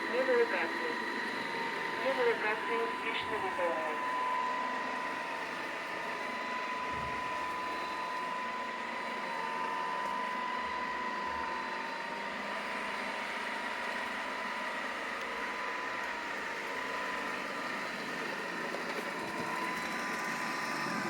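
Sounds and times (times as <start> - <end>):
robot vacuum running: 0.0 - 21.0.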